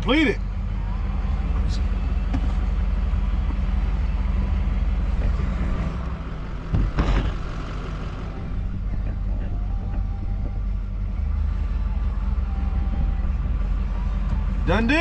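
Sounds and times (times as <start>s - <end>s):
truck engine idling: 0.0s - 15.0s
knocks: 6.5s - 7.6s.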